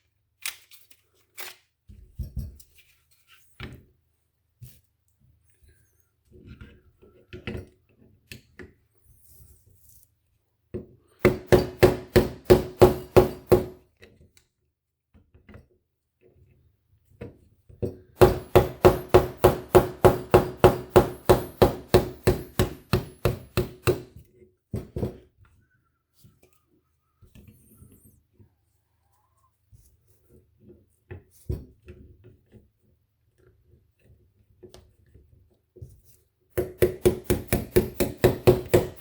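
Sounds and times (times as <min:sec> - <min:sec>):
small hammer tapping on punch: 0:11.2 - 0:13.8, 0:18.2 - 0:24.1, 0:36.6 - 0:39.0.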